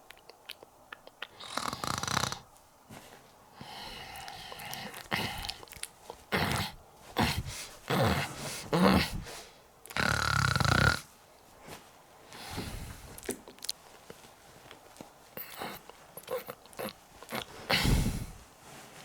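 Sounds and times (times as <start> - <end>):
comic snoring voice: 1.4 - 2.5, 6.3 - 9.2, 9.9 - 11.1, 15.4 - 18.2.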